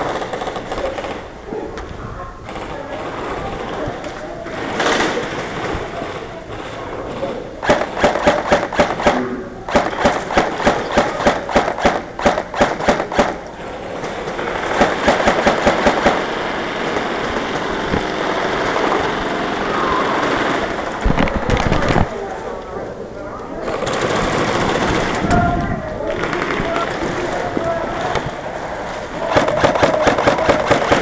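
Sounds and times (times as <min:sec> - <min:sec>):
airsoft gun rapid shots: 0:07.6 - 0:13.4, 0:14.5 - 0:18.9, 0:29.2 - 0:31.0.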